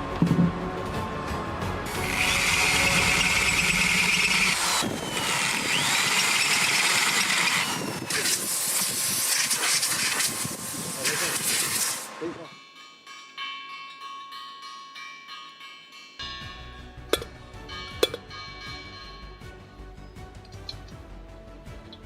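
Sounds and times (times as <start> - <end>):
background music: 0.0 - 4.9, 16.2 - 22.0
high-pitched machine whine: 1.9 - 12.5.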